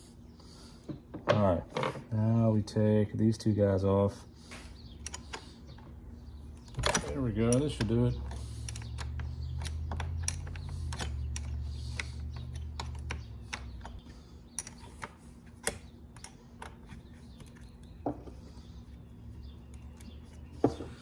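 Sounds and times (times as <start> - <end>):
hand tools clicking on metal parts: 6.6 - 17.7.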